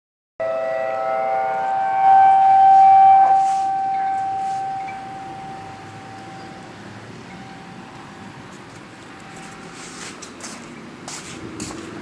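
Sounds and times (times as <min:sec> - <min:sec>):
siren-like multi-pitched tone: 0:00.4 - 0:08.4.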